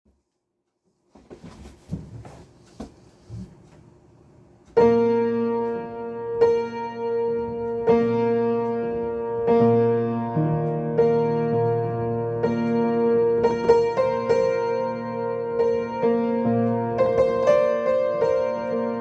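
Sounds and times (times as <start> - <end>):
slow piano chords: 4.3 - 19.0.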